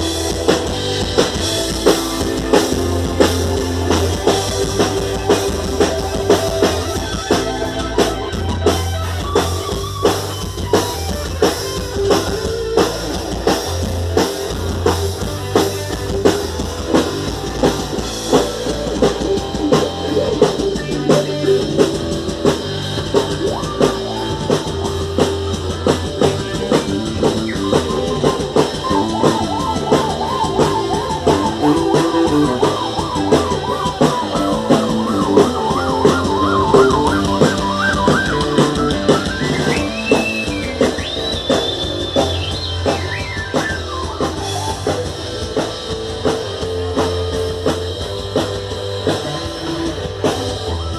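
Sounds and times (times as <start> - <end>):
drum kit beat: 0.0 - 50.9
rock band music: 0.0 - 50.9.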